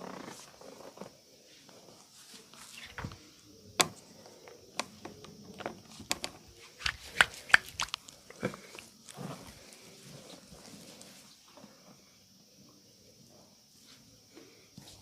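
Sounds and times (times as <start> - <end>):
hands slapping body in massage: 6.8 - 8.0.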